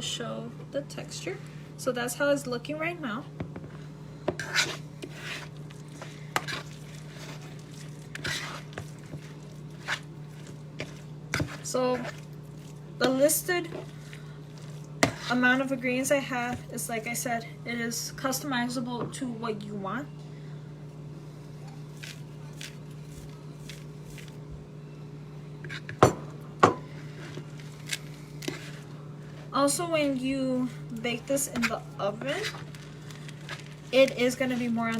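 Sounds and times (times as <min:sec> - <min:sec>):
steady low hum: 0:00.0 - 0:34.9
spoon stirring sticky dough: 0:03.6 - 0:17.2, 0:21.4 - 0:24.5, 0:26.8 - 0:34.9.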